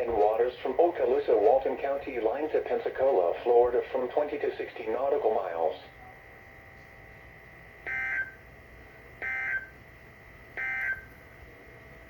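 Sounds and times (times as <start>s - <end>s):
digital data tone bursts: 10.6s - 11.1s.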